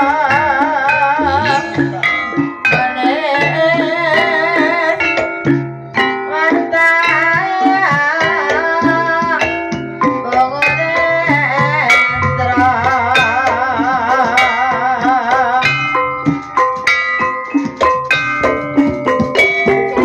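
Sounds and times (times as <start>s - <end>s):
hand drum strokes: 0.0s - 6.1s, 7.0s - 20.0s
wavering vibrato melody: 0.0s - 7.6s, 9.4s - 20.0s
gamelan music: 0.0s - 20.0s.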